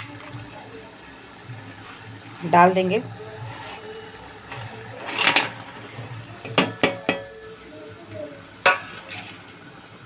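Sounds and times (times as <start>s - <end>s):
metal utensils clinking on pot: 4.5s - 7.4s, 8.6s - 9.6s.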